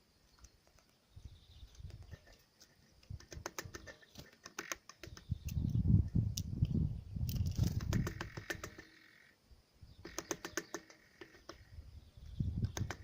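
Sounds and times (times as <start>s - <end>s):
birds pecking at feeder: 1.6s - 5.8s, 10.0s - 11.6s.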